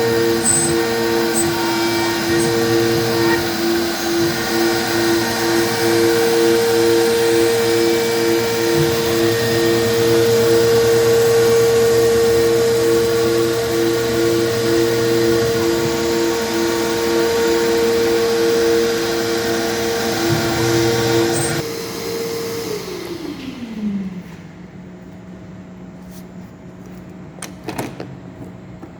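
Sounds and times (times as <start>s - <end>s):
router spindle cutting plastic: 0.0s - 21.7s.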